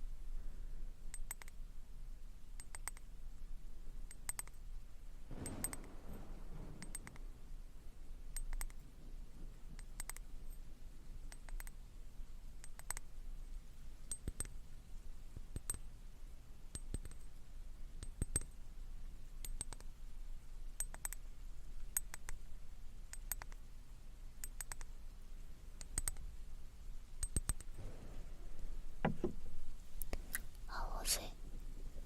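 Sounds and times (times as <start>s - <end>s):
soft crisp clicking: 1.1s - 1.7s, 2.5s - 3.2s, 4.0s - 6.0s, 6.7s - 7.3s, 8.3s - 8.9s, 9.6s - 10.6s, 11.2s - 11.9s, 12.5s - 16.0s, 16.6s - 18.7s, 19.3s - 20.0s, 20.7s - 23.7s, 24.3s - 26.5s, 27.1s - 30.7s.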